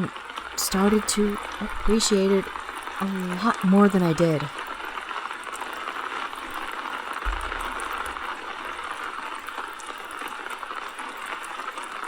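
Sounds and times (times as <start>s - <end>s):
steady rain falling: 0.0s - 12.0s
low thud: 7.2s - 9.1s.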